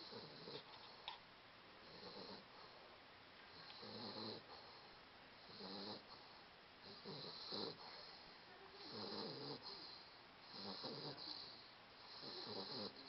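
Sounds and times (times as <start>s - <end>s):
puppy snoring softly: 0.0s - 1.1s, 1.8s - 13.0s.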